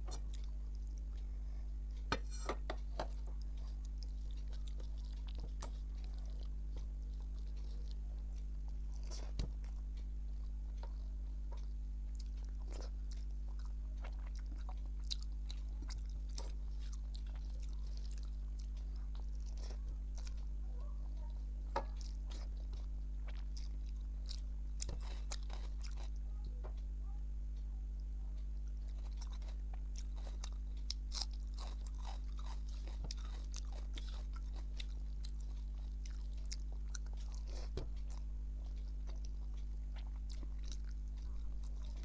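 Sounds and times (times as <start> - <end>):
low electrical hum: 0.0 - 42.0
wet chewing clicks and smacks: 0.0 - 42.0.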